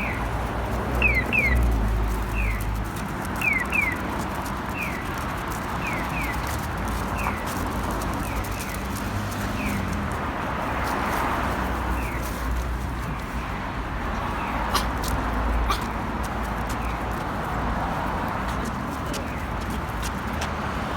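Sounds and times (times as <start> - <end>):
small bird chirping: 14.1 - 16.0.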